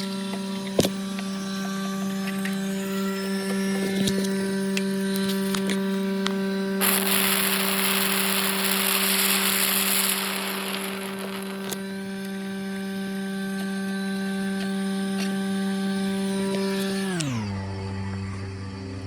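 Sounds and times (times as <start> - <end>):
vacuum pump humming: 0.0 - 18.8
loud hiss of rushing air: 6.8 - 11.8.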